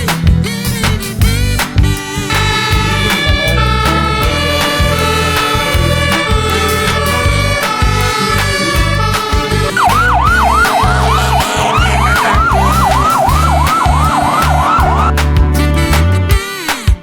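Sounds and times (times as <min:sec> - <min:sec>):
music with bass beat: 0:00.0 - 0:17.0
emergency siren wailing: 0:02.0 - 0:15.2.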